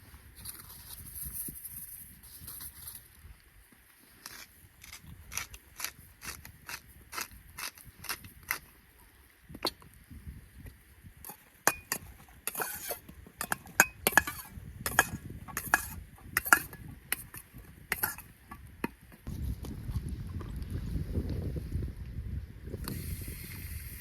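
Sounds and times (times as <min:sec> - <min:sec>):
metallic clinks and scrapes: 0:11.3 - 0:18.3.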